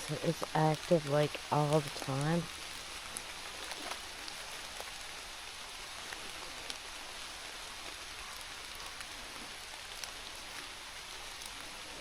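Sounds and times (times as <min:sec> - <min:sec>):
steady rain hiss: 0:00.0 - 0:12.0.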